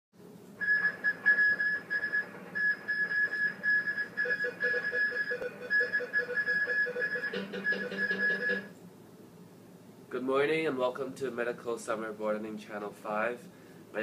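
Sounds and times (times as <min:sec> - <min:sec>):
high-pitched electronic beeping: 0:00.6 - 0:08.7
lower beeping: 0:00.6 - 0:08.7.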